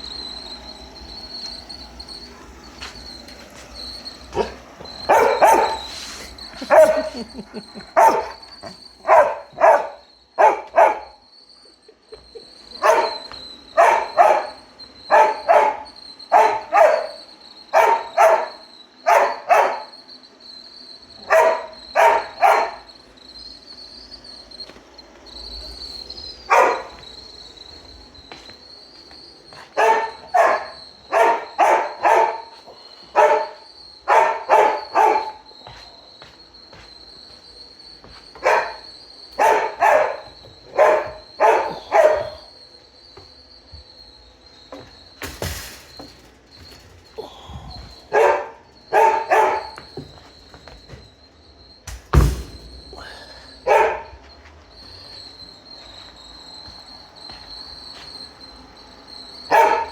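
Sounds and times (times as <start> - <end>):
high-pitched whine: 0.0 - 9.6, 19.9 - 31.6
dog barking: 4.3 - 11.2, 12.8 - 20.0, 21.2 - 22.9, 26.5 - 27.0, 29.5 - 35.6, 38.3 - 42.6, 48.1 - 50.1, 53.6 - 54.2, 59.4 - 59.9.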